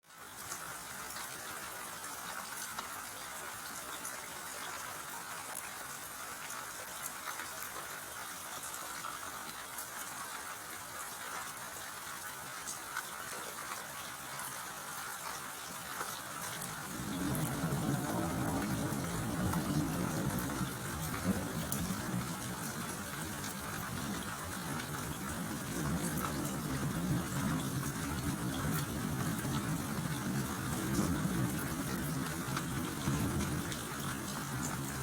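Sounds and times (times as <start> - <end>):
steady rainfall: 0.0 - 35.0
raindrop ticks: 15.3 - 35.0.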